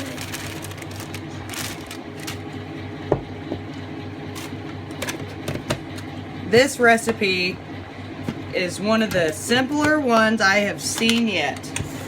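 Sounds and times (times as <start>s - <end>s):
cake mix pouring rustle: 0.0s - 2.5s.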